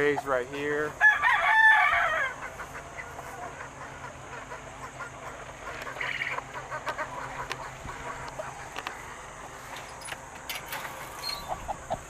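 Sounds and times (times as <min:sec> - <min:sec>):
chickens clucking and calling: 0:00.0 - 0:12.0
chicken squawk: 0:01.0 - 0:08.7, 0:11.2 - 0:12.0.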